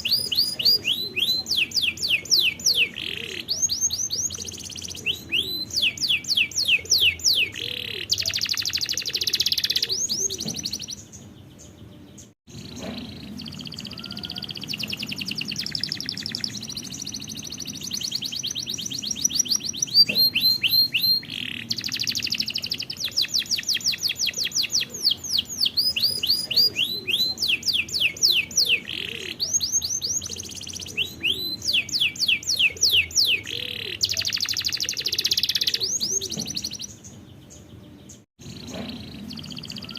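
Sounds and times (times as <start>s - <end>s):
canaries singing trills: 0.0s - 39.9s.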